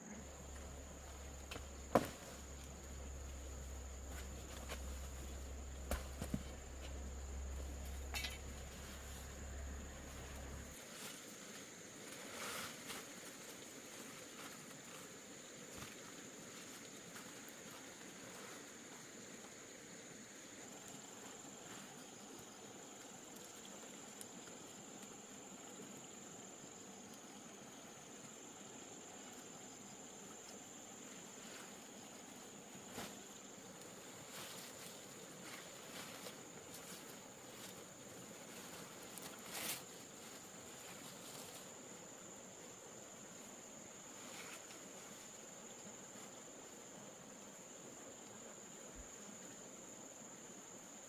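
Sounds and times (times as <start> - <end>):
insects trilling: 0.0 - 51.0
knocks and rustles: 0.5 - 10.8.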